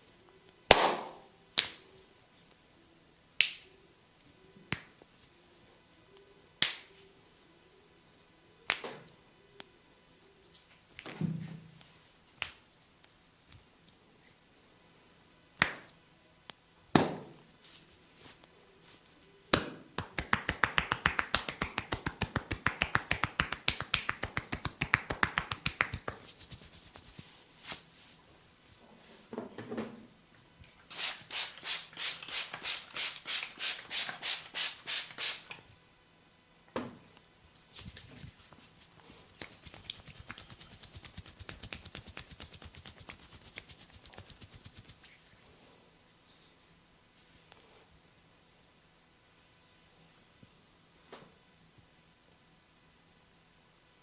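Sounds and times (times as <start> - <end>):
hand slaps on head: 0.7 - 1.8, 19.5 - 26.3
scratching strokes through hair: 20.0 - 28.3, 37.7 - 45.7.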